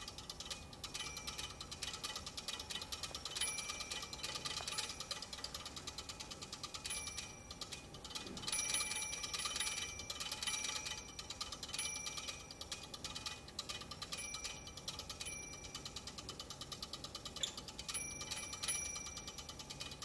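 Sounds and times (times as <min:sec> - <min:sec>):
high bell-like pings: 0:03.4 - 0:05.3, 0:06.8 - 0:07.7, 0:08.5 - 0:12.7, 0:14.1 - 0:15.8, 0:17.9 - 0:19.5.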